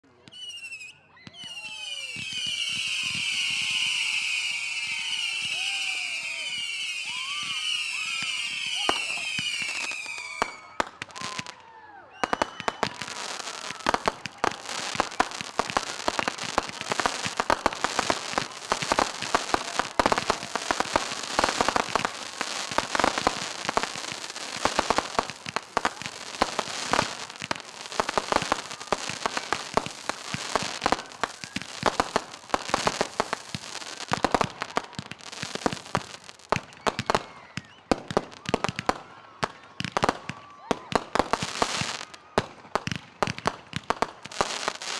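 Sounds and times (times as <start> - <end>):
firework whistling: 0.2 - 11.5, 12.1 - 40.3
firework crackling pops: 12.2 - 44.9.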